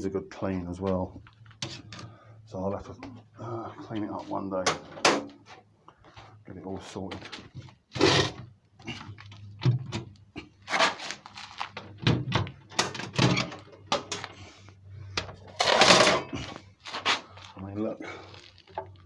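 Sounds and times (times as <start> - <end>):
metal tools clattering in a box: 15.5 - 16.5.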